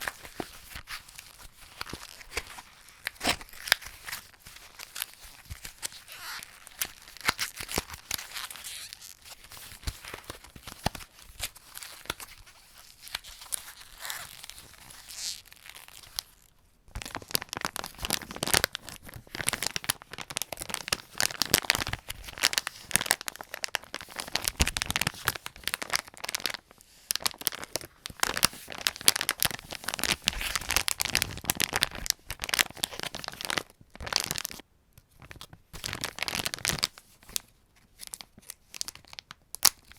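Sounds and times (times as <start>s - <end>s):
cardboard packaging crinkling: 0.0s - 16.4s, 17.0s - 34.6s, 35.4s - 37.4s
sweet bag crinkling: 17.1s - 34.6s, 35.8s - 37.0s.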